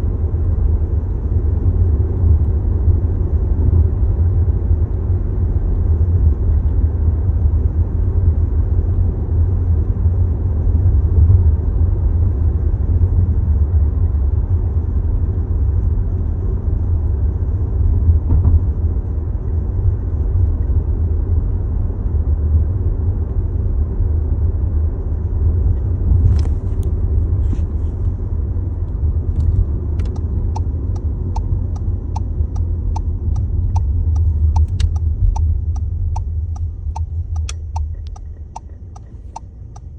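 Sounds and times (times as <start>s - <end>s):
car vibration rumble: 0.0s - 39.9s
sharp regular ticking: 30.0s - 39.9s.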